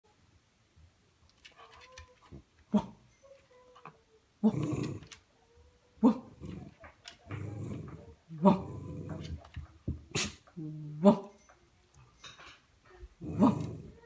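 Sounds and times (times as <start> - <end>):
dog sneezing: 10.1 - 10.5.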